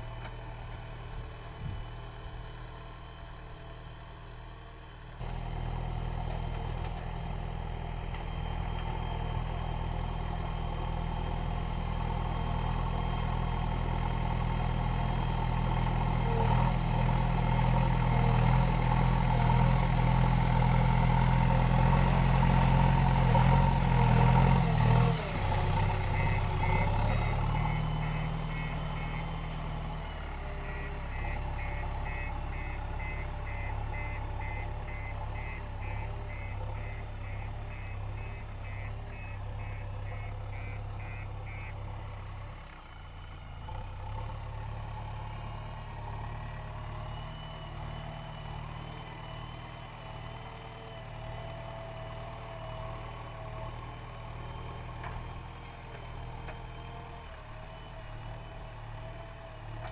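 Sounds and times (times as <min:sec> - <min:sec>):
diesel engine running: 0:00.0 - 0:59.9
reversing beeper: 0:17.9 - 0:42.1.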